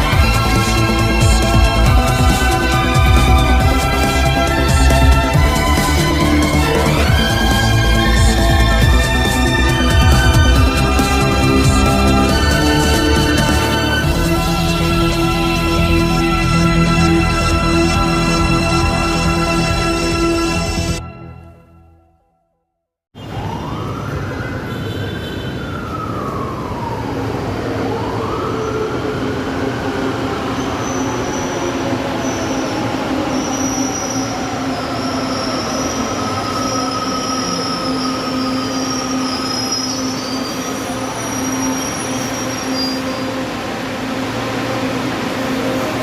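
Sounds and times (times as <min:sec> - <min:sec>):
train wheels on rails with squeal: 0:28.3 - 0:43.8.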